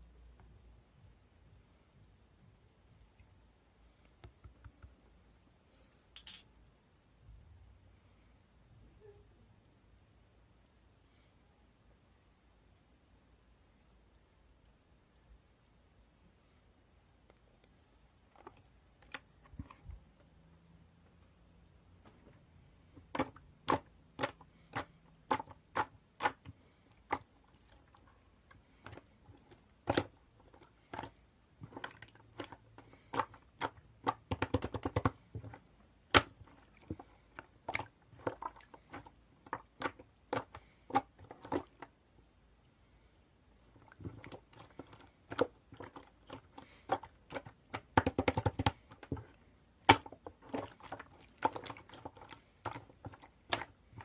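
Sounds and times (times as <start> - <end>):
sharp clicks and taps: 4.0 - 5.1.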